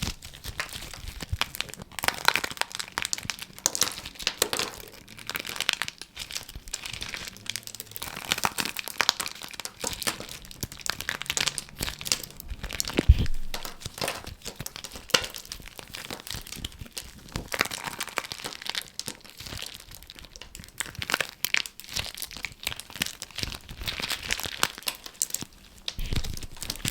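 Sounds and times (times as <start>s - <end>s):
squishy crinkling and crackling: 0.0s - 26.9s
loud thud: 13.0s - 14.0s.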